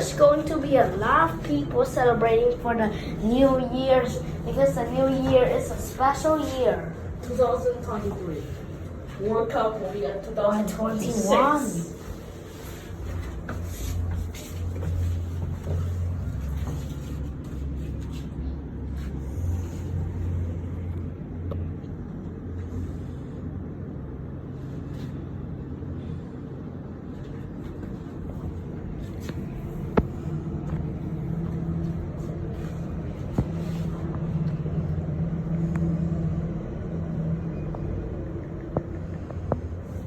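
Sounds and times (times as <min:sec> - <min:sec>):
low mechanical rumble and hum: 0:00.0 - 0:40.0.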